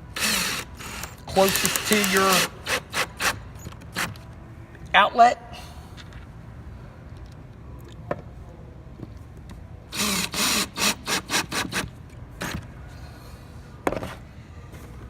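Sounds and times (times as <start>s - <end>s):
power drill-driver whirring: 0.1s - 4.1s, 10.0s - 12.6s.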